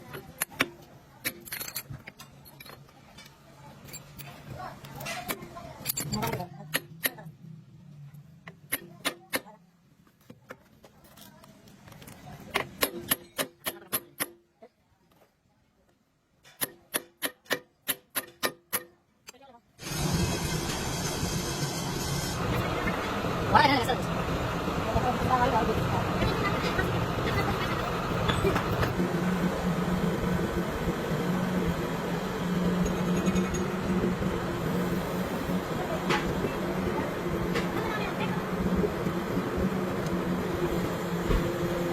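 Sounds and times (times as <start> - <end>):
workshop noise: 0.0 - 15.4, 16.0 - 41.9
machine humming: 19.8 - 41.9.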